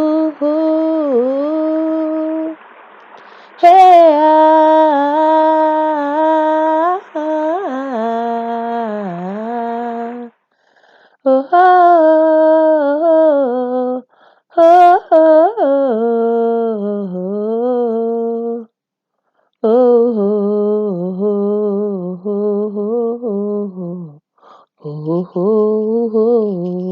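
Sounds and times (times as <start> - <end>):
person singing wordless held notes: 0.0 - 2.6, 3.2 - 10.3, 24.8 - 26.9.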